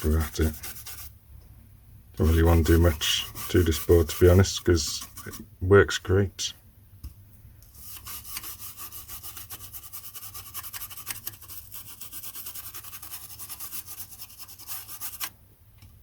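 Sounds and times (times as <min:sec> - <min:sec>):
toothbrush scrubbing metal pins: 0:02.3 - 0:05.4, 0:07.7 - 0:15.3.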